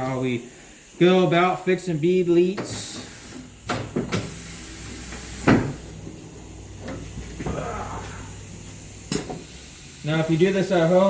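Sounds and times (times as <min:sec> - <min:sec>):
steady low hum: 0:04.4 - 0:10.0.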